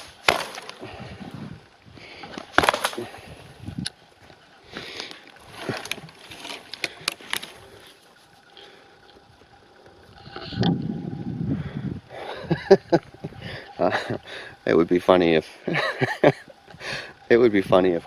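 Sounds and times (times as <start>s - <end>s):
boots stomping on rotten wood: 0.0s - 0.8s, 2.3s - 3.1s
wood cracking and crunching: 0.0s - 1.2s, 2.0s - 9.2s.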